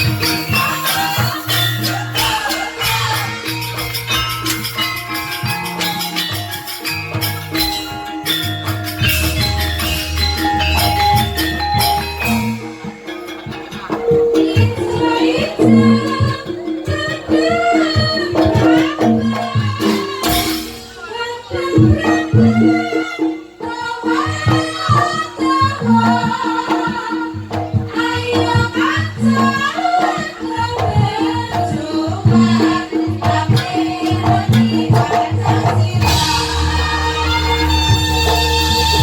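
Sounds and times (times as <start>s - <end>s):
person singing: 0.0s - 4.2s, 28.2s - 39.0s
band playing: 0.0s - 23.6s, 32.1s - 39.0s
steady drum beat: 0.0s - 23.6s, 24.2s - 39.0s.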